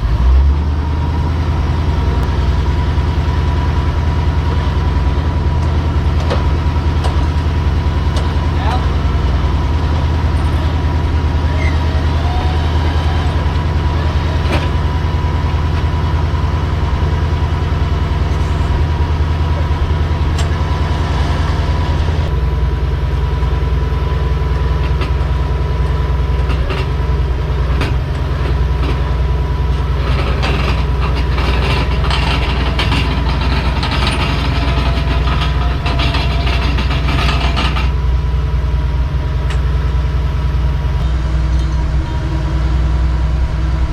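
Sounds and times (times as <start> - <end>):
low engine drone: 0.0 - 43.9
scattered clicks and knocks: 5.6 - 16.2, 24.6 - 25.4, 26.4 - 38.0.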